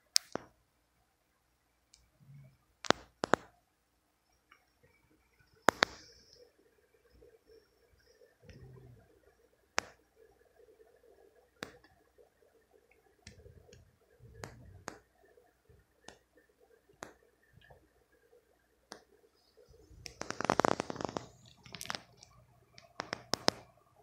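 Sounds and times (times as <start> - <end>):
crackling rattle: 1.9 - 3.6, 4.2 - 18.3, 18.9 - 24.0
sharp clicks and ticks: 2.8 - 3.6, 4.4 - 6.5, 11.5 - 12.0, 12.9 - 15.1, 16.0 - 17.8, 20.0 - 23.7.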